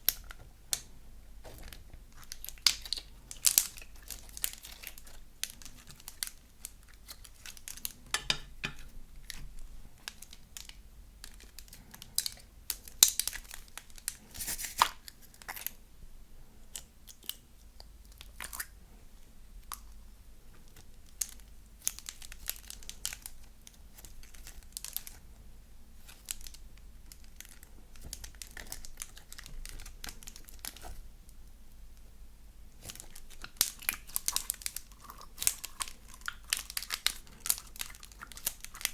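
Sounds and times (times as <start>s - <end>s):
slime crackling and popping: 1.5s - 15.8s, 20.7s - 25.2s, 26.0s - 31.0s, 32.7s - 38.9s.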